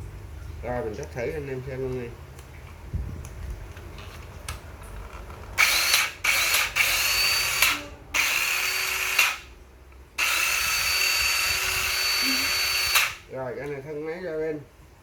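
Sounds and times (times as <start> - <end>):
saw motor whining: 5.6 - 9.5, 10.2 - 13.2.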